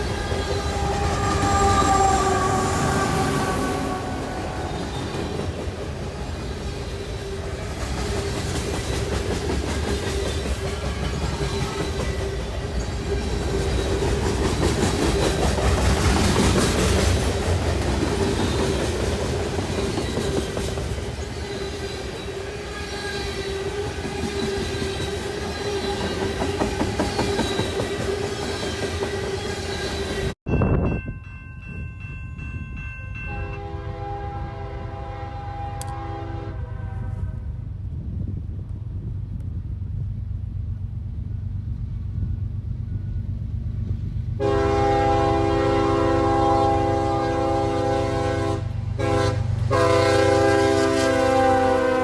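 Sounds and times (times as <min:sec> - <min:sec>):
train horn: 0:00.0 - 0:05.6, 0:33.2 - 0:37.7, 0:44.4 - 0:52.0
train wheels clacking: 0:00.0 - 0:30.4
train rumble and whine: 0:00.0 - 0:52.0.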